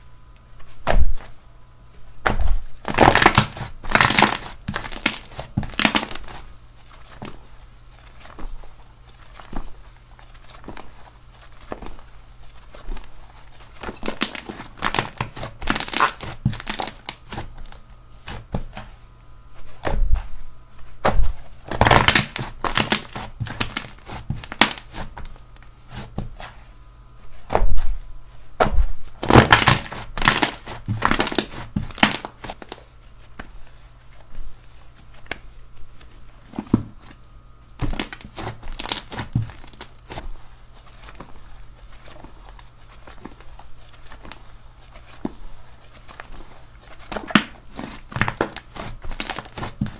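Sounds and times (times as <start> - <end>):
slime crackling and popping: 2.8 - 6.4, 13.8 - 18.5, 21.7 - 25.2, 29.2 - 32.8, 37.8 - 40.2, 47.0 - 49.9.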